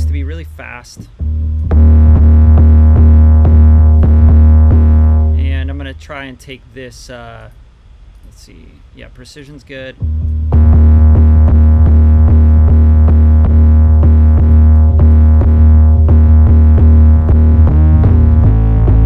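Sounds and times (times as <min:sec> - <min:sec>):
drum-machine hits: 0:00.0 - 0:06.0, 0:10.0 - 0:19.0
distorted bass note: 0:00.0 - 0:06.4, 0:10.0 - 0:19.0.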